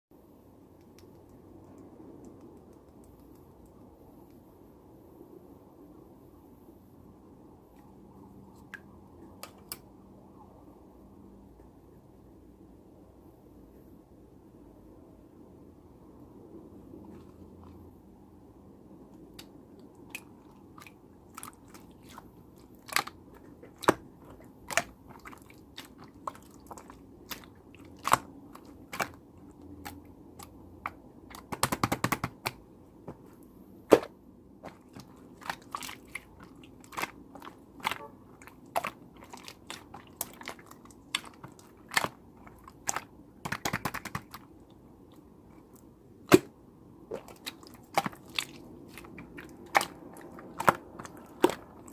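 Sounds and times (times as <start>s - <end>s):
slime crackling: 20.2s - 32.5s, 34.6s - 44.5s, 47.1s - 51.9s.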